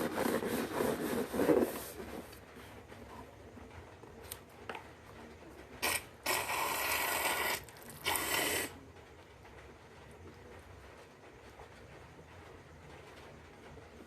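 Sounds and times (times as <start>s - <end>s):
balloon crackly hissing: 5.8s - 8.8s.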